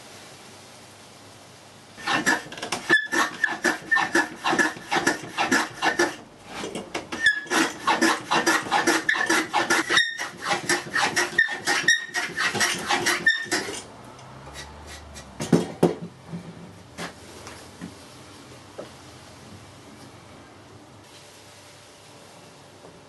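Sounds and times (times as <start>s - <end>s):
hand tool rasping wood: 2.0s - 13.9s, 14.5s - 15.6s.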